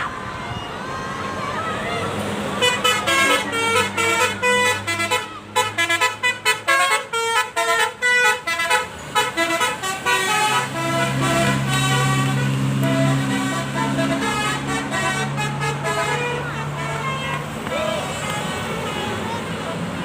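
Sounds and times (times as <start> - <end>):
musical bus horn tune: 2.5 - 19.6
passing engine drone: 9.0 - 20.0.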